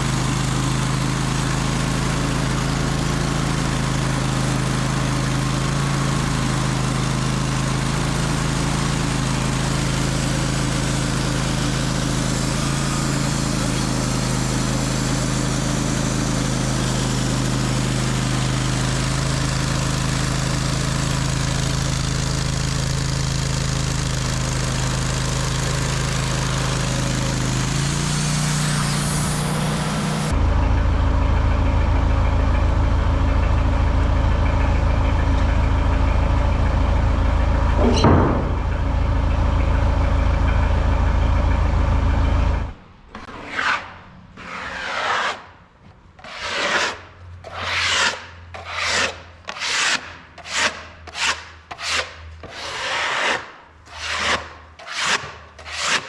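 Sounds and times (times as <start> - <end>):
sawmill running: 0.0 - 56.0
brisk strokes rubbing wood: 43.2 - 45.6, 46.2 - 56.0.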